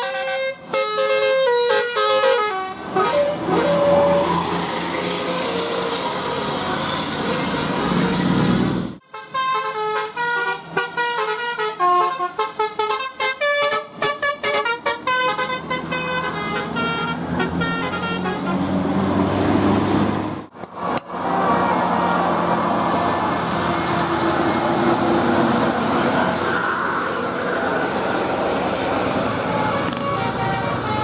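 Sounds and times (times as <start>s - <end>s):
multi-tone bus horn melody: 0.0s - 19.1s, 29.3s - 31.0s
bus engines and traffic: 0.0s - 31.0s.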